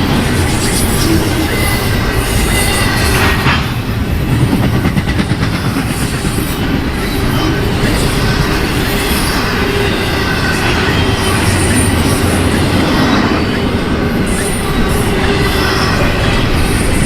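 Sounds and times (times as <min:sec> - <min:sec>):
freight train rumbling past: 0:00.0 - 0:17.0
wheel squeal: 0:06.0 - 0:17.0.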